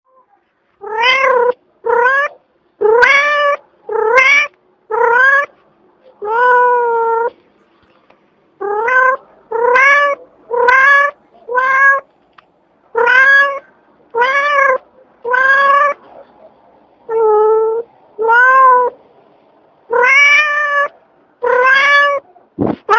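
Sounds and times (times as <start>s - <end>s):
cat meowing: 0.1s - 5.5s, 6.2s - 7.4s, 8.6s - 12.0s, 12.9s - 16.0s, 17.1s - 19.0s, 19.9s - 22.9s.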